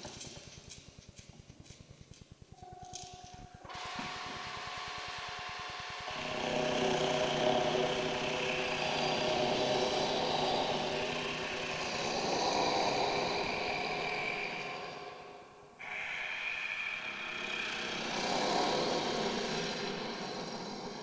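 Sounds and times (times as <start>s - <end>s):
mechanical drone: 2.9s - 21.0s.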